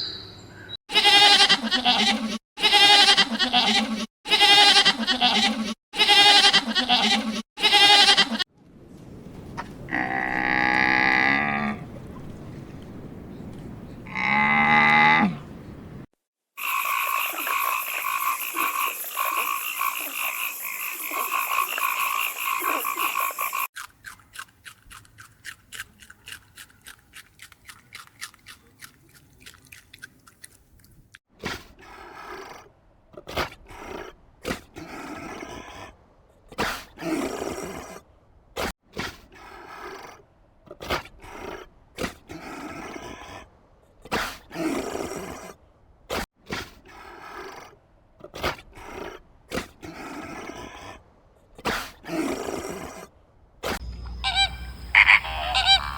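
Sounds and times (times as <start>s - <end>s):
rapid clicking animal calls: 16.6s - 23.7s, 54.2s - 55.9s
animal call falling in pitch: 54.2s - 55.9s
loud chorus of animal calls: 54.2s - 55.9s
short loud animal calls: 54.2s - 55.9s.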